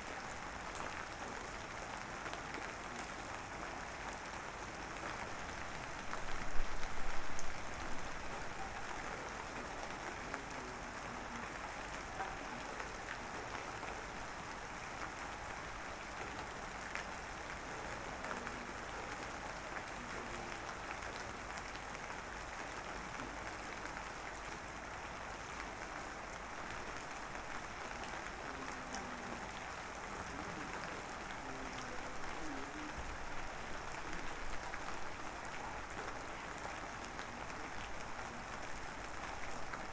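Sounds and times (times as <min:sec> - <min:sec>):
light rain hissing: 0:00.0 - 0:39.9.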